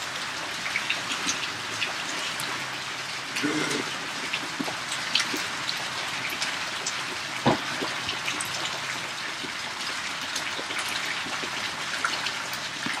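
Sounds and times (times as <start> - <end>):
steady rain hiss: 0.0 - 9.5.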